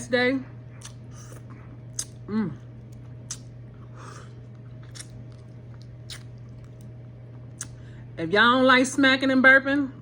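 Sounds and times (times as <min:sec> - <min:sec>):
lip smacks and mouth clicks: 0:00.8 - 0:02.2, 0:02.8 - 0:03.6, 0:04.2 - 0:07.8.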